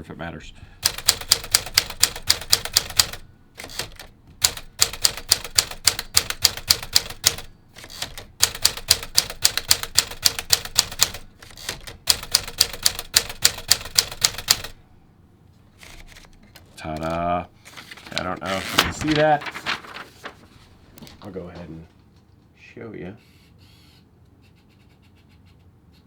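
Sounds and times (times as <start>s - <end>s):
manual typewriter key strikes: 0.8s - 14.8s.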